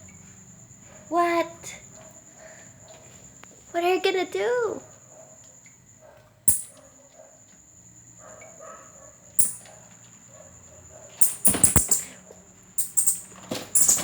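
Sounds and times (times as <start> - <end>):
sharp clicks: 6.5 - 6.7, 9.4 - 9.7, 11.2 - 12.1, 12.8 - 14.0.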